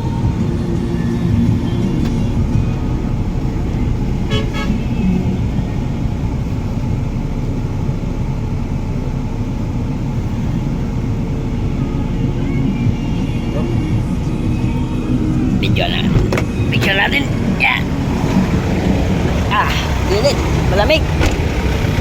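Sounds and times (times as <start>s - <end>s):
vehicle engine and traffic rumble: 0.0s - 22.0s
car horn toot: 4.2s - 5.2s.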